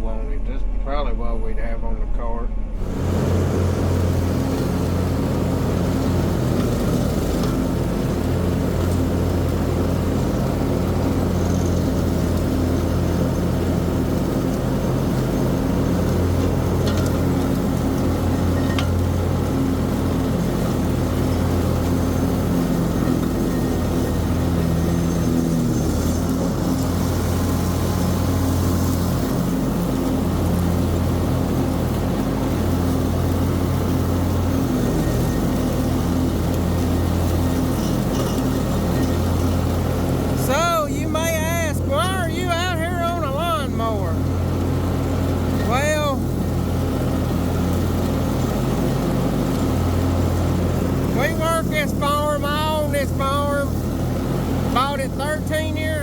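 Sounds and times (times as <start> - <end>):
diesel engine droning under load: 0.0 - 56.0.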